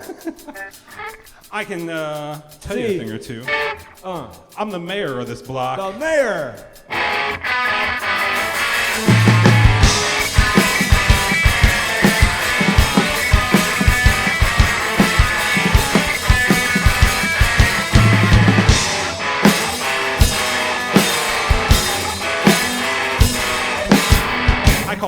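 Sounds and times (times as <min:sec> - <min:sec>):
electric guitar: 0:00.0 - 0:01.5, 0:03.3 - 0:04.0, 0:06.8 - 0:25.0
drum kit beating: 0:06.9 - 0:25.0.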